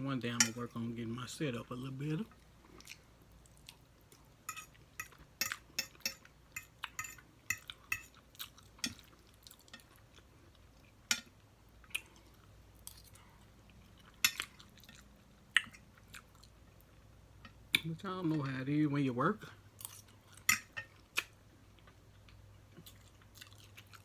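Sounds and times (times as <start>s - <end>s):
cutlery clinking on dishes: 0.4s - 0.6s, 4.5s - 8.2s, 20.5s - 20.9s
chewing: 2.4s - 11.0s, 11.8s - 17.0s, 19.8s - 24.0s.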